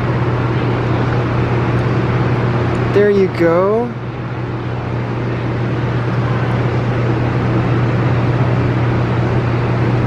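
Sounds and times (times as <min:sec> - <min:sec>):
low machine hum: 0:00.0 - 0:10.0.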